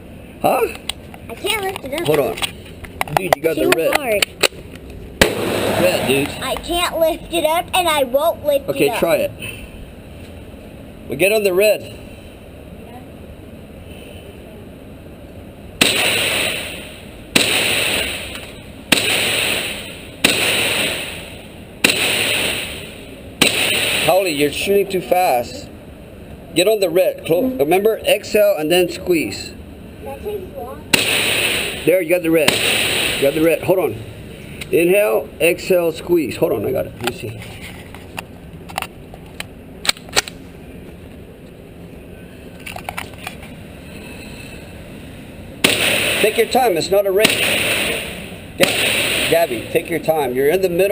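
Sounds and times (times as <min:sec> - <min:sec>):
gunshots with echo: 0:05.2 - 0:06.6, 0:15.8 - 0:24.4, 0:30.9 - 0:33.6, 0:45.6 - 0:49.9.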